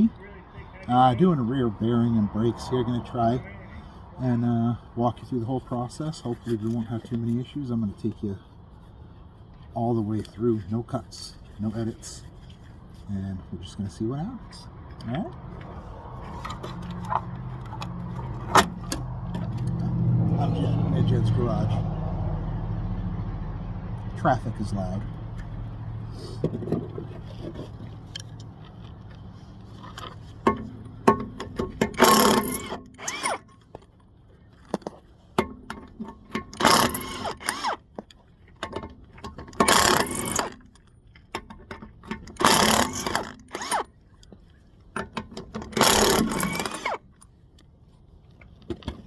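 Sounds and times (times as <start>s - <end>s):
low traffic rumble: 0.0s - 49.0s
small clicks and clatter: 26.5s - 49.0s
impact wrench bursts: 30.5s - 33.5s, 36.2s - 37.9s, 39.3s - 40.7s, 42.2s - 43.9s, 45.5s - 47.0s.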